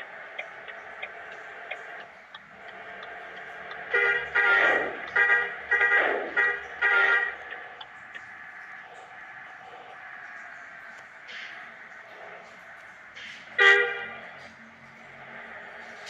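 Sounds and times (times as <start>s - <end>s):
bus horn toots: 3.1s - 7.8s, 13.6s - 14.3s.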